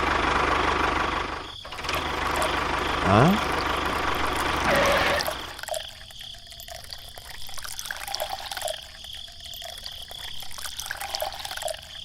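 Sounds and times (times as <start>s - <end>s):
liquid trickling and dripping: 3.4s - 12.0s.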